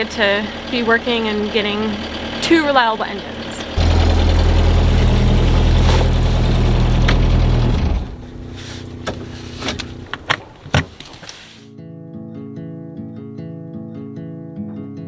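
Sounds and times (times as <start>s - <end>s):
boat engine idling: 0.0s - 10.7s.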